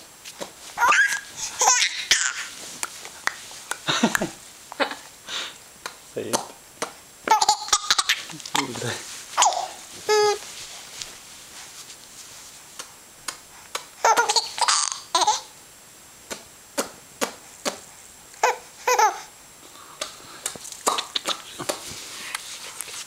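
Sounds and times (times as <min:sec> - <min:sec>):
baby laughing: 0:00.8 - 0:02.5, 0:07.3 - 0:08.7, 0:09.4 - 0:10.4, 0:14.0 - 0:15.5, 0:18.4 - 0:19.3.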